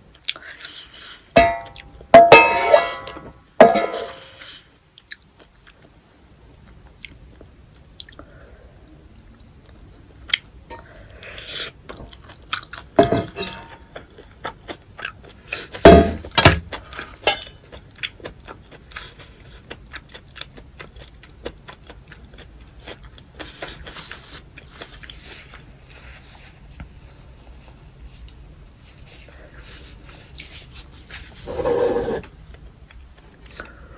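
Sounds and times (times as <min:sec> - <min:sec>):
close chewing with wet mouth clicks: 0:11.9 - 0:12.9, 0:18.0 - 0:24.0.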